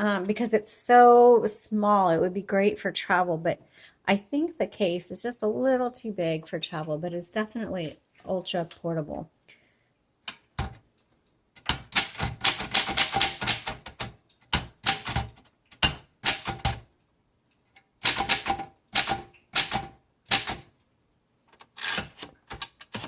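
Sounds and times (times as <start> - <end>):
typewriter key strikes: 11.6 - 16.8, 18.0 - 20.7.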